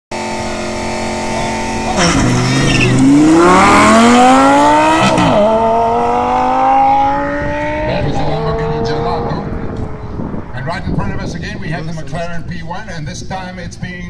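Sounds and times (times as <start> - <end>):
sports car engine accelerating: 0.1 - 10.6.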